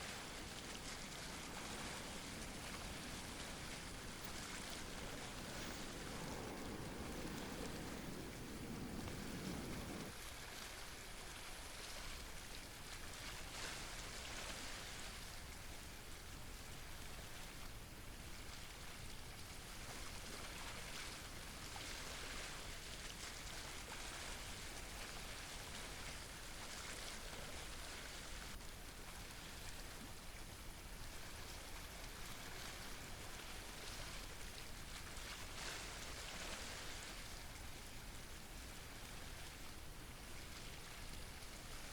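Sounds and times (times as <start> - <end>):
steady hiss of water: 0.0 - 41.9
low rumble: 1.5 - 10.1.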